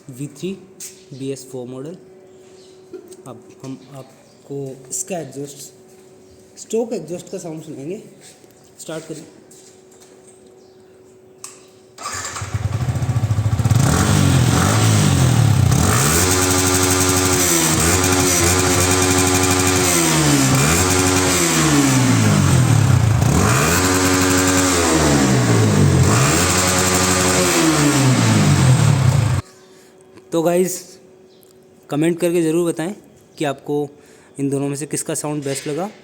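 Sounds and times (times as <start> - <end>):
motorcycle engine starting and revving: 12.0 - 29.4.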